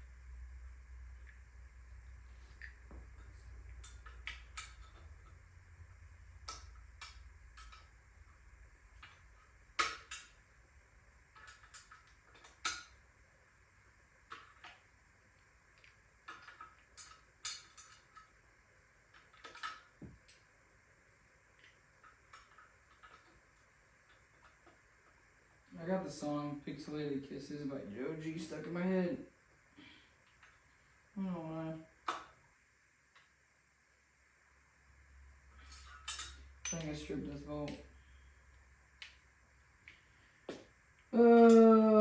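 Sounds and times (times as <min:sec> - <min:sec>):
metallic clinks of hand tools: 0:35.6 - 0:37.2.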